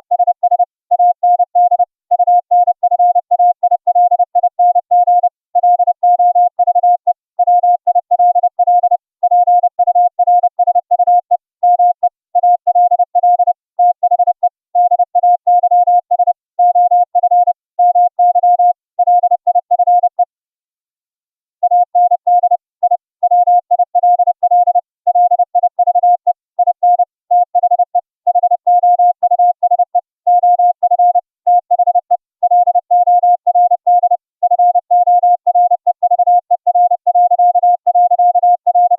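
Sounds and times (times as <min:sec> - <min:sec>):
morse code tone: 0:21.6 - 0:38.9.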